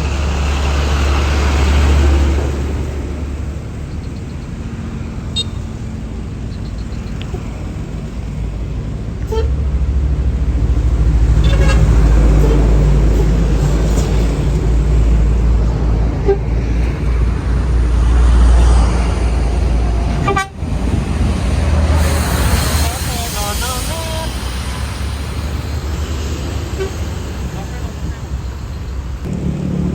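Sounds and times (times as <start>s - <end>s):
bus engine rumbling past: 0.0s - 29.9s
bus horn toots: 5.3s - 5.8s, 9.2s - 9.7s, 11.3s - 13.0s, 16.1s - 16.7s, 20.1s - 20.8s, 26.6s - 27.8s.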